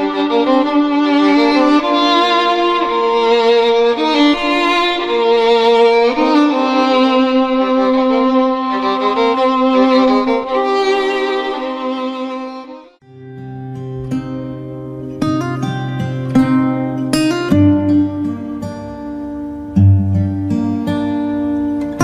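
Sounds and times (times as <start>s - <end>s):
violin melody over held note: 0.0s - 13.4s.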